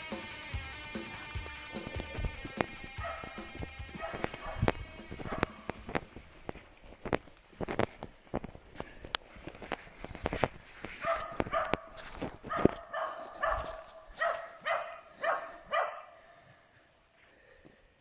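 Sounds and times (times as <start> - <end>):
dog barking: 2.8 - 5.8, 11.0 - 16.6.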